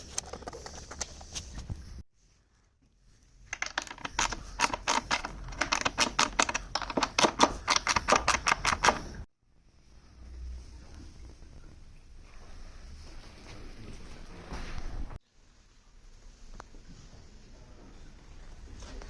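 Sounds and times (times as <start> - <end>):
sharp clicks and taps on wood: 3.6 - 9.1.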